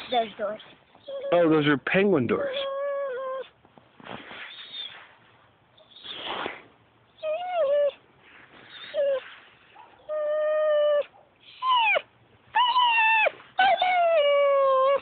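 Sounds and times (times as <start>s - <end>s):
dog whining: 1.0s - 1.5s, 2.4s - 3.6s, 7.2s - 8.0s, 8.6s - 15.0s.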